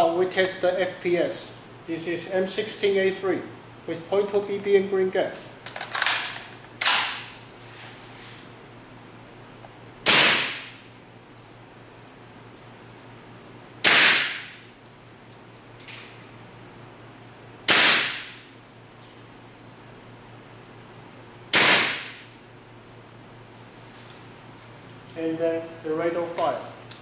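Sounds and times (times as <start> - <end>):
airsoft rifle shots: 10.0 - 10.8, 13.8 - 14.6, 17.7 - 18.4, 21.5 - 22.3.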